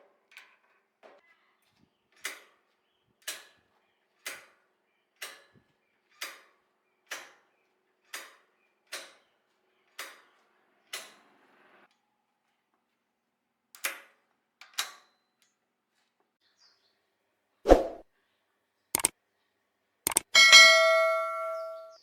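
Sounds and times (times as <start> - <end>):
sharp ringing knocks: 20.1 - 22.0.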